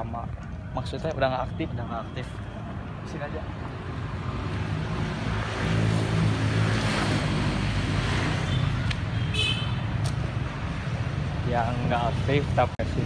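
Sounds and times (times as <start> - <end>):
vehicle passing by: 4.0 - 8.8.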